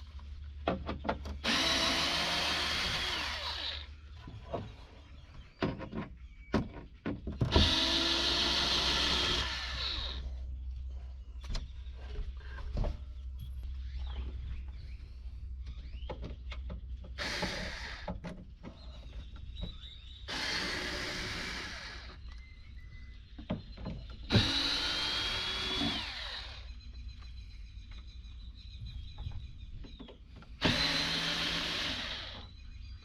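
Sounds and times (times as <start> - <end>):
electric screw gun running: 24.3 - 26.7, 30.6 - 32.5.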